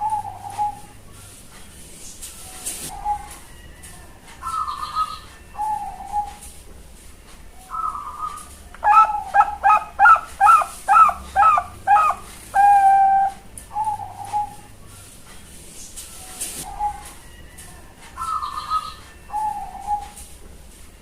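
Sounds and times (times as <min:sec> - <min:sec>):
dove cooing: 0:00.0 - 0:01.0, 0:02.9 - 0:03.5, 0:04.4 - 0:06.4, 0:07.7 - 0:14.8, 0:16.6 - 0:17.2, 0:18.2 - 0:20.3.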